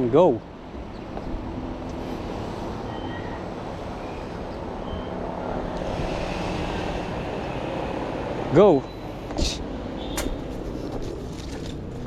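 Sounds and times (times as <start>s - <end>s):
wind rushing over microphone: 0.7s - 8.5s.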